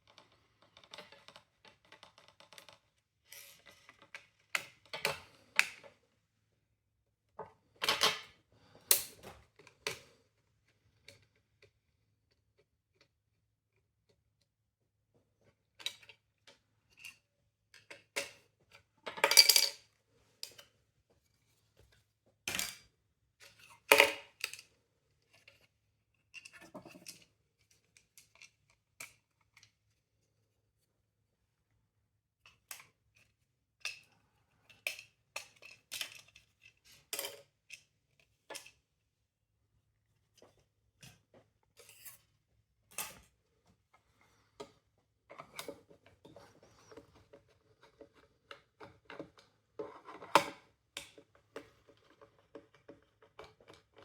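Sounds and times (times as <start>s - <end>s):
plastic parts clicking and knocking: 0.0s - 3.0s, 44.6s - 54.0s.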